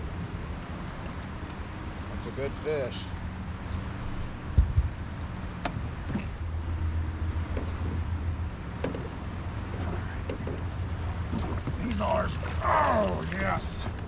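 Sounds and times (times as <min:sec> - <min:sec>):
boat motor humming: 0:02.9 - 0:14.0
sharp knocks on boat: 0:08.8 - 0:10.7.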